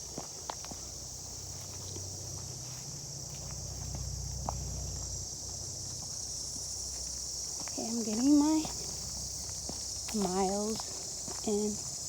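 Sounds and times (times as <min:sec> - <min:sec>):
footsteps on trail: 0:00.0 - 0:12.0
insects chorus: 0:00.0 - 0:12.0.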